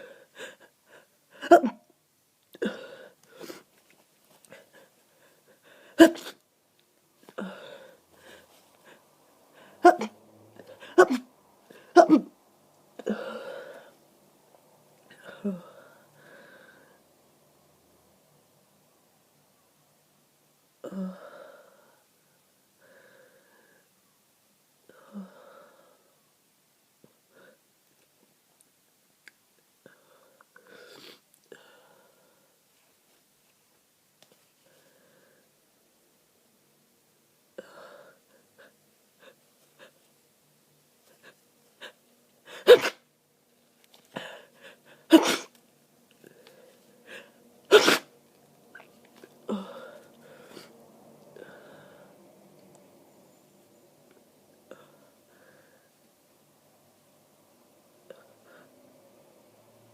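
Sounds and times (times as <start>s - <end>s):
person sneezing: 1.4s - 1.8s, 6.0s - 6.4s, 9.8s - 10.2s, 10.8s - 12.4s, 41.8s - 43.0s, 44.2s - 45.6s, 47.7s - 48.1s
soft breath: 7.2s - 9.8s, 15.1s - 17.1s, 20.9s - 24.1s, 29.8s - 33.2s, 34.3s - 35.7s, 46.2s - 47.5s, 49.1s - 52.4s, 54.6s - 56.1s.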